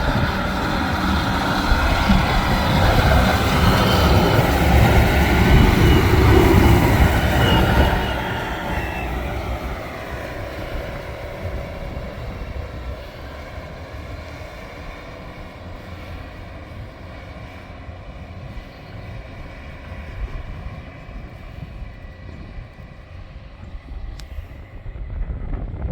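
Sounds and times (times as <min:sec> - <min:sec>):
diesel engine rumbling: 0:00.0 - 0:23.8.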